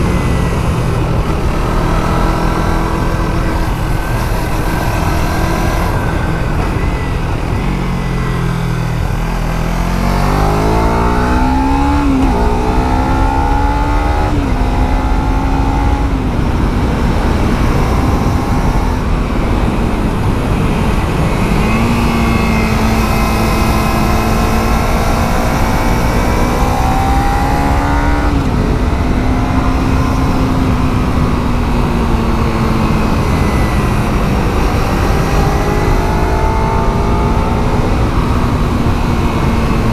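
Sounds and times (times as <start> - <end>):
motorcycle engine shifting gears: 0.0 - 39.9
wind rushing: 0.0 - 39.9.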